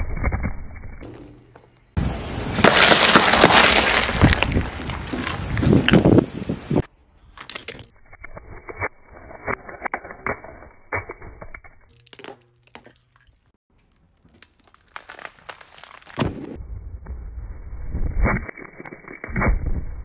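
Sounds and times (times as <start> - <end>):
objects crushed under car tyres: 2.6 - 5.4.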